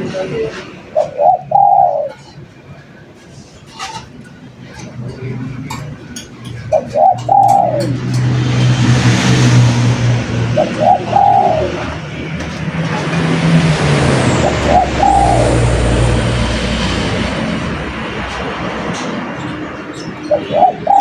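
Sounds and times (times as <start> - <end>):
rumble of traffic: 0.0 - 21.0
dove cooing: 0.9 - 2.4, 6.5 - 8.2, 10.3 - 12.4, 13.5 - 17.9, 19.9 - 21.0.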